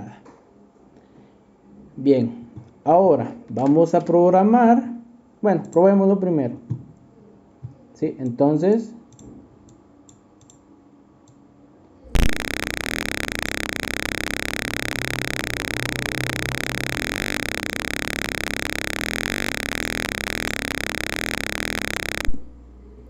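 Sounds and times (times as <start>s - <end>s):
piezo buzzer steady buzz: 12.2s - 22.6s.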